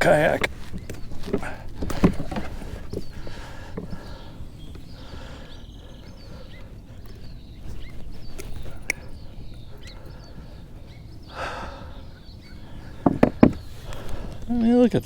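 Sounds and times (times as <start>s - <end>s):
sharp knocks: 0.0s - 4.9s, 12.7s - 14.2s
light clicks: 0.0s - 14.5s
handling noise in kayak: 0.0s - 14.7s
breathy exhale: 2.7s - 14.5s.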